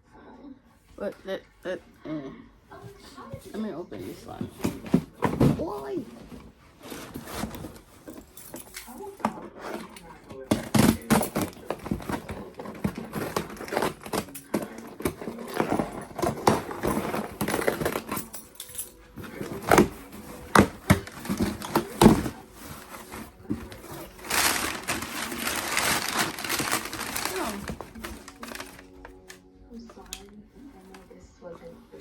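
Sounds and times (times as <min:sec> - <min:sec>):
packaging crackling and rustling: 0:04.6 - 0:30.1.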